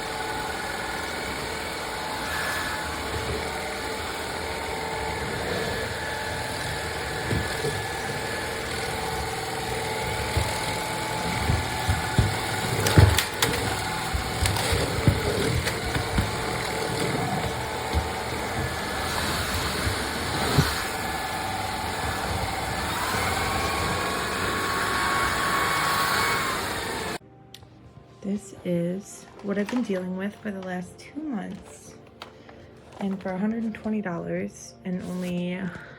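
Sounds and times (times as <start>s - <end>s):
vacuum motor whine: 0.0s - 27.2s
debris knocking and crackling: 6.0s - 22.6s.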